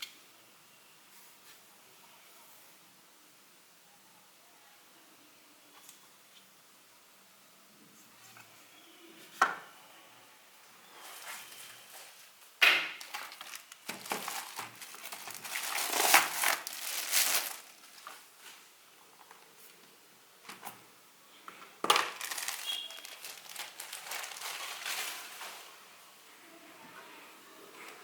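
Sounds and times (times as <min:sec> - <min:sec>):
packaging crinkling and rustling: 0:12.9 - 0:19.4, 0:21.8 - 0:25.8.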